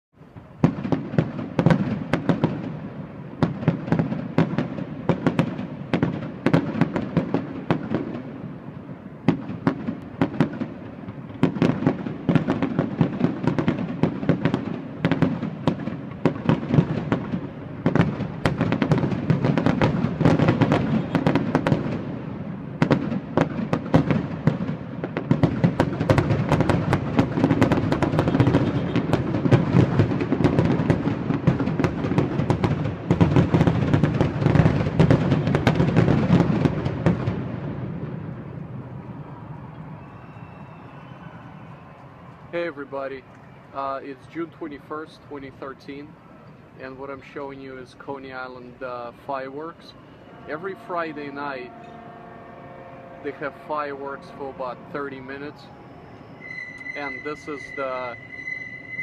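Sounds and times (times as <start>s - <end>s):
fireworks shell bursts and crackling: 22.8s - 37.4s.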